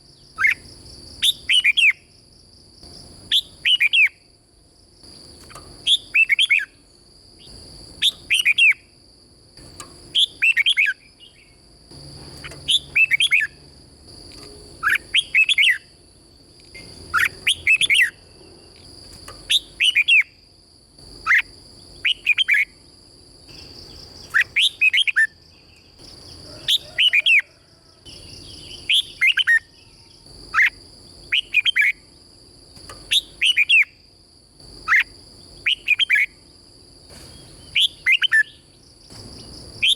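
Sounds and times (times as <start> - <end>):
bulbul singing whistled notes: 0.2 - 2.1, 3.3 - 4.2, 5.8 - 6.8, 7.4 - 8.9, 10.1 - 11.6, 12.4 - 13.6, 14.4 - 16.0, 16.7 - 18.3, 19.5 - 20.4, 21.3 - 22.8, 23.5 - 27.5, 28.1 - 32.0, 33.0 - 34.0, 37.3 - 38.7.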